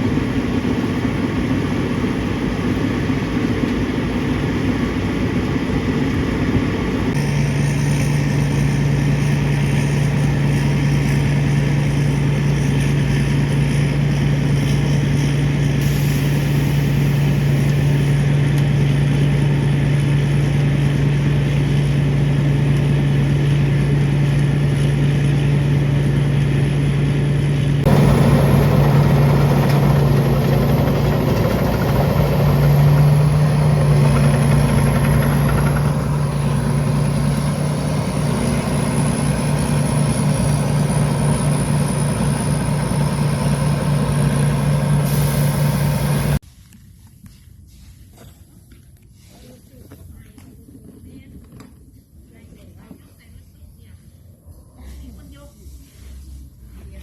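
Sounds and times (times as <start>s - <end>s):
machine engine humming: 3.7s - 46.4s.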